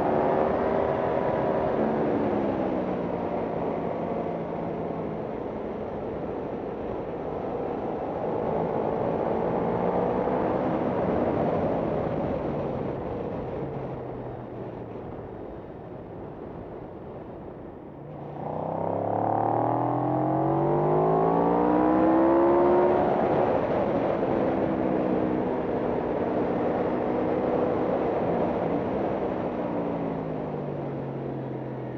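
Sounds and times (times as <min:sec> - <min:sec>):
racing motorcycle engine revving: 0:18.1 - 0:28.4.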